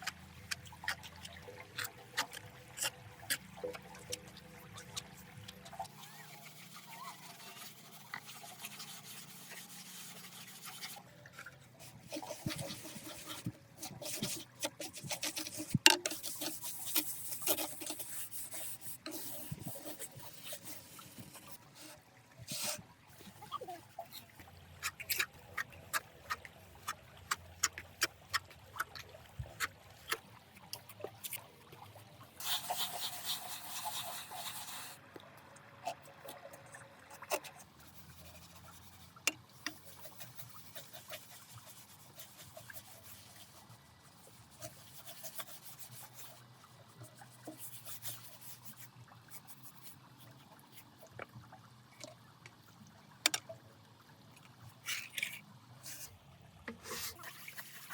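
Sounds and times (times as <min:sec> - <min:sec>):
faint trickling water: 0:00.0 - 0:57.9
scraping and tapping: 0:07.8 - 0:21.5, 0:54.9 - 0:56.1.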